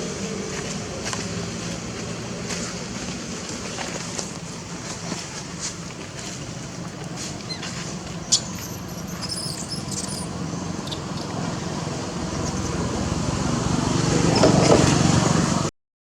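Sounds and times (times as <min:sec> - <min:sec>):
steady low rumble: 0:07.8 - 0:14.4.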